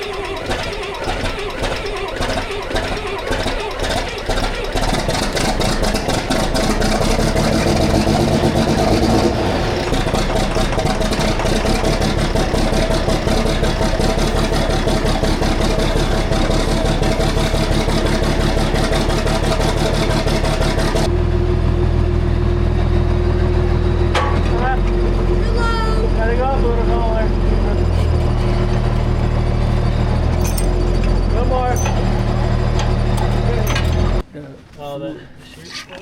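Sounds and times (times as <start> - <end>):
fast machinery rattle: 0.0 - 21.1, 26.1 - 34.2
tractor engine running: 0.0 - 34.3.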